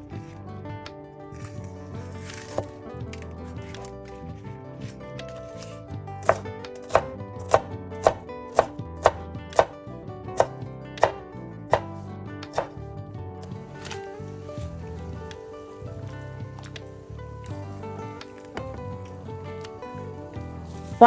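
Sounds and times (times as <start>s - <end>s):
knife chopping on cutting board: 6.2s - 9.8s, 10.4s - 11.9s, 12.5s - 12.7s.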